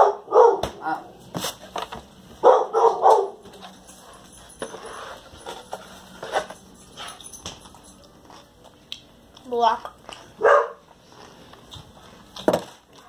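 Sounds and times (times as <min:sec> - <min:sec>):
dog barking: 0:00.0 - 0:01.1, 0:02.4 - 0:03.5, 0:10.4 - 0:10.8.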